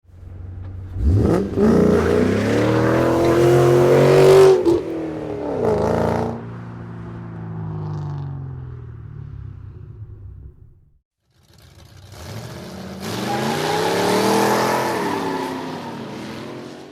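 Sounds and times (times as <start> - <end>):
car engine revving and accelerating: 0.8 - 6.6, 11.4 - 16.9.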